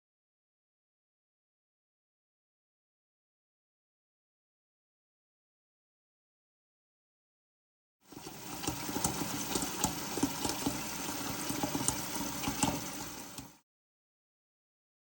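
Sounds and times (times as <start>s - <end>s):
water splashing and bubbling: 8.1s - 13.6s.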